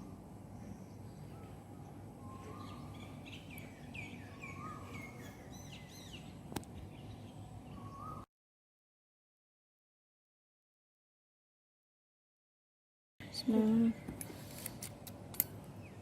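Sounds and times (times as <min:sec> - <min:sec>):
low background noise: 0:00.0 - 0:08.2, 0:13.2 - 0:16.0
birds chirping: 0:00.0 - 0:08.3, 0:15.6 - 0:16.0.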